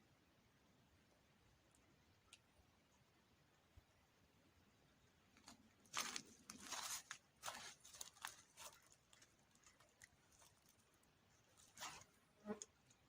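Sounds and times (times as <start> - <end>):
rustling and clicking handling: 5.3 - 13.0.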